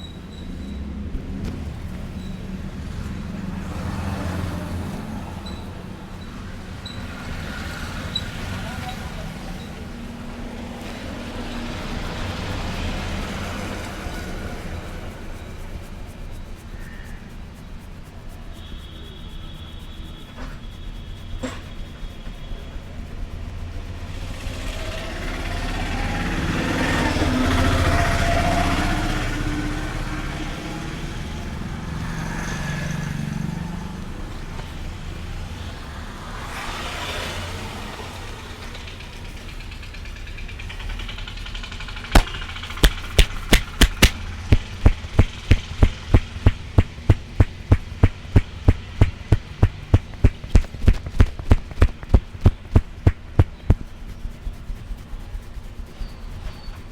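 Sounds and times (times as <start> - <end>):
rumbling noise: 42.2 - 54.7
rhythmic hand slapping: 42.2 - 56.2.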